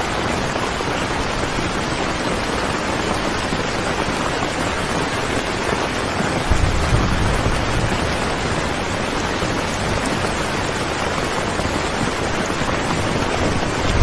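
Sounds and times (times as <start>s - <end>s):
heavy rain falling: 0.0s - 14.0s.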